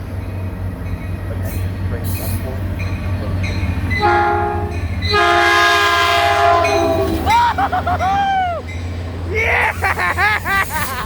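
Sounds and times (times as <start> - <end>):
train rumbling past: 0.0 - 11.0
train air horn: 4.0 - 7.3.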